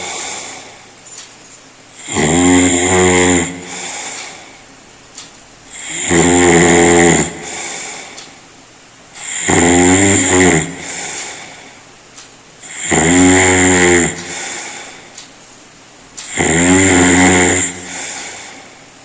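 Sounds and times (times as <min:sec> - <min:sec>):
person snoring: 0:00.0 - 0:00.9, 0:02.0 - 0:04.6, 0:05.7 - 0:08.2, 0:09.2 - 0:11.8, 0:12.6 - 0:15.1, 0:16.2 - 0:18.8
quiet breathing: 0:00.0 - 0:01.0, 0:02.0 - 0:04.8, 0:05.7 - 0:08.5, 0:09.1 - 0:11.9, 0:12.6 - 0:15.3, 0:16.2 - 0:19.0.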